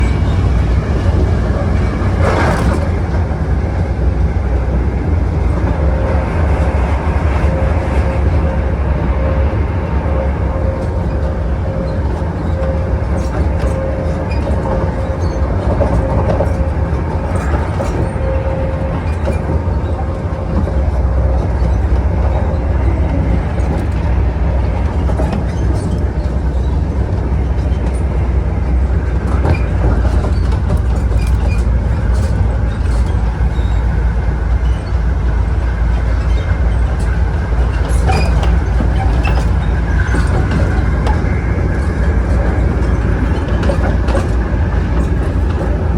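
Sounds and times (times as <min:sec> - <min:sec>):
wheels clicking over rail joints: 0:00.0 - 0:45.9.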